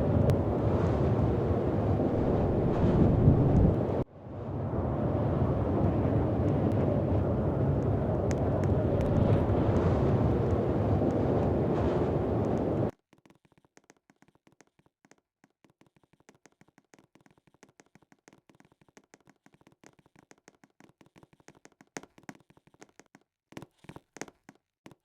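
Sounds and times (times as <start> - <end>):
faint rapid clicks and taps: 7.7 - 11.6, 12.4 - 25.0.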